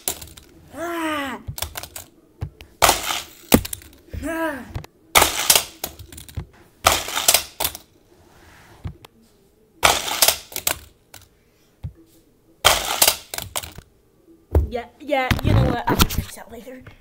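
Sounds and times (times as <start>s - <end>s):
toy cars clattering on plastic track: 0.0s - 0.5s, 9.8s - 11.3s
toy cars knocking into track pieces: 0.0s - 0.5s, 1.5s - 2.1s, 2.8s - 4.0s, 5.1s - 7.9s, 9.8s - 11.3s, 12.6s - 13.8s.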